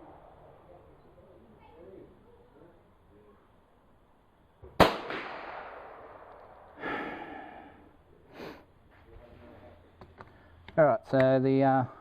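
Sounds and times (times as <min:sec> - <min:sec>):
pistol shot with echo: 0:04.7 - 0:06.8.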